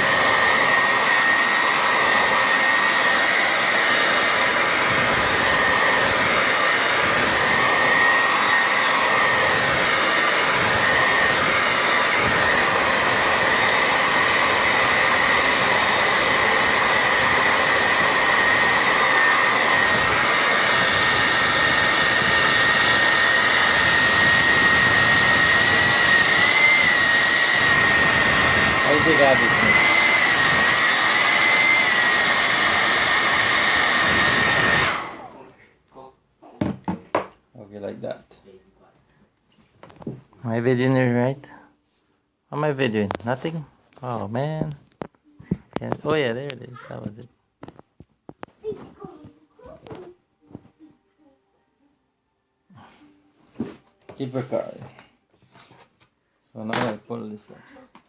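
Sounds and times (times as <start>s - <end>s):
hair dryer blowing: 0.0s - 35.6s, 54.2s - 55.0s.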